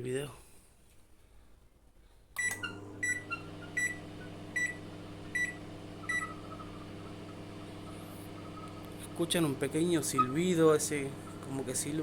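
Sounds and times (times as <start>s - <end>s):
microwave oven humming: 2.4s - 12.0s.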